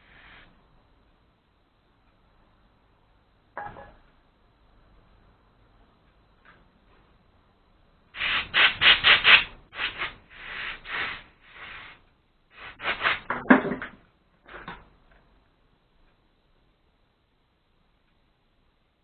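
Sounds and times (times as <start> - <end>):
scrubbing strokes on metal parts: 8.2 - 13.3.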